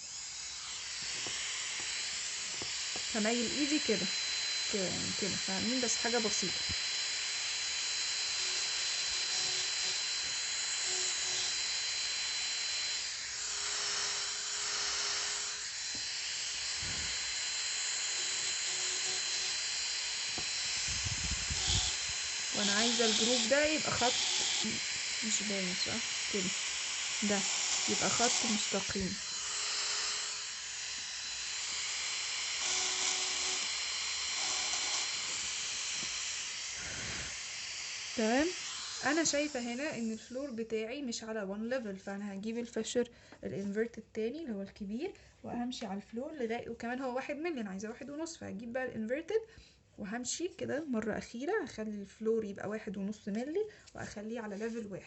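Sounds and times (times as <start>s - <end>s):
dental drill high whine: 0.0s - 40.7s
hissing air: 16.7s - 17.3s, 36.6s - 37.6s.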